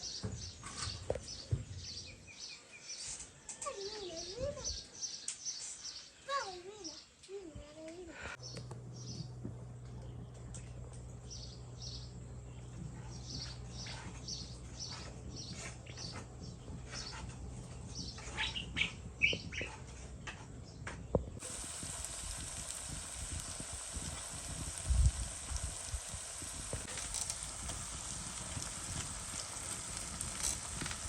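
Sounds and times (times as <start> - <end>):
small birds chirping: 8.4 - 31.0
even hiss: 21.4 - 31.0.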